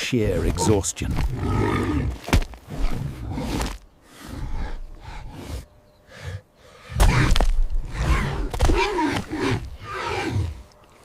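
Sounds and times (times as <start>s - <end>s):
low rough animal growling: 0.2s - 7.0s.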